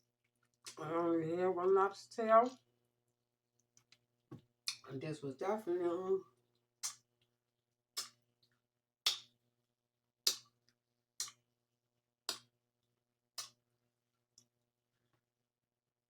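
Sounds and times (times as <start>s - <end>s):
sharp mouth clicks: 6.8s - 7.0s, 8.0s - 8.2s, 9.0s - 9.3s, 10.2s - 10.5s, 11.2s - 11.4s
wet chewing: 6.8s - 7.1s, 11.2s - 11.4s.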